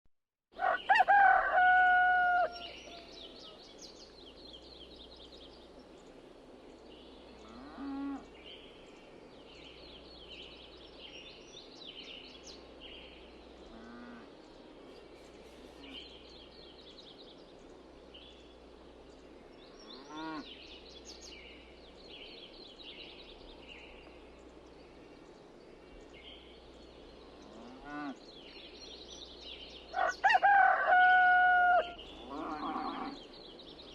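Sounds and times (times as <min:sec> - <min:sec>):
rooster crowing: 0:00.6 - 0:03.5, 0:29.9 - 0:33.0.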